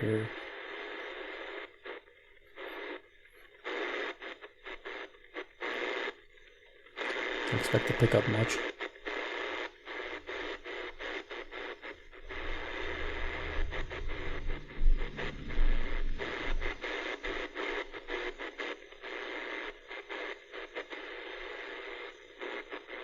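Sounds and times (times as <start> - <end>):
radio static hissing: 0.0 - 23.0
low rumble: 11.8 - 18.0.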